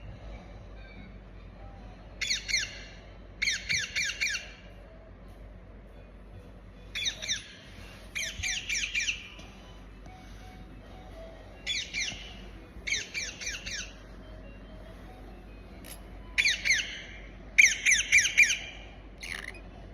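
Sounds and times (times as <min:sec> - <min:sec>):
parrot squawking: 0:02.2 - 0:04.6, 0:07.0 - 0:07.6, 0:08.2 - 0:09.4, 0:11.7 - 0:14.0, 0:16.4 - 0:19.6.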